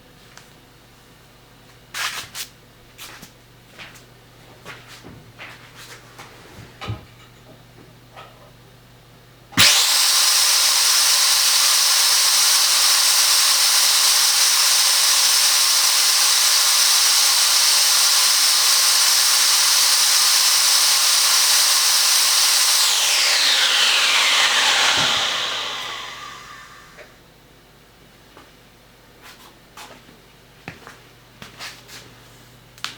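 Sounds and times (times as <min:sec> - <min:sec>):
vacuum cleaner motor whine: 0:09.6 - 0:27.1.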